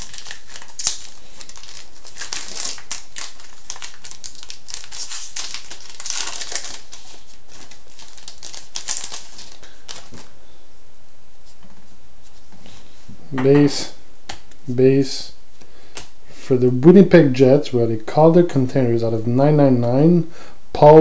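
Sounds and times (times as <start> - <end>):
cards being handled: 0.0 - 10.3
foil wrapper crinkling: 0.0 - 10.3.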